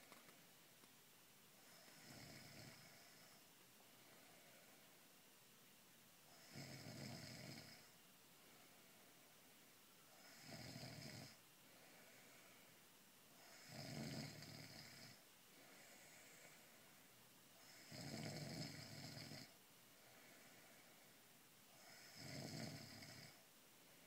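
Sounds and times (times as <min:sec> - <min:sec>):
quiet breaths: 0:00.0 - 0:24.0
woman snoring: 0:01.6 - 0:03.4, 0:06.3 - 0:07.9, 0:10.1 - 0:11.4, 0:13.4 - 0:15.2, 0:17.6 - 0:19.6, 0:21.7 - 0:23.4.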